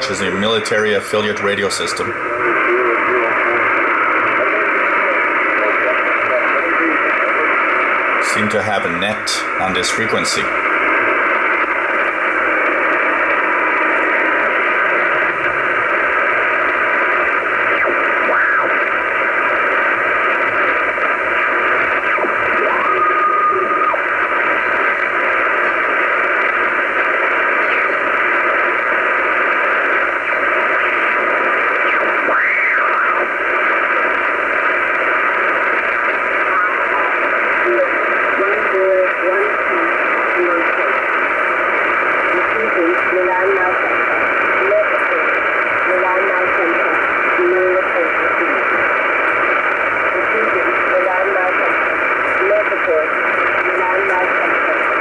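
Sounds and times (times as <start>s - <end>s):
steady radio whistle: 0.0s - 11.6s, 12.4s - 55.0s
radio hiss and static: 0.0s - 55.0s
gliding radio whistles: 22.1s - 24.0s.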